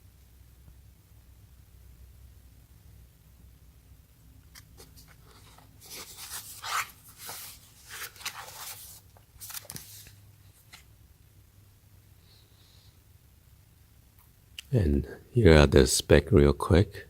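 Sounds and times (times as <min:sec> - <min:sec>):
cardboard box rustling: 0:04.8 - 0:10.1.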